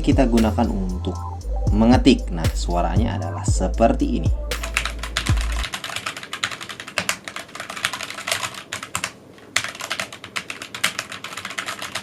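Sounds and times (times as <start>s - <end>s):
mechanical keyboard typing: 4.6s - 12.0s.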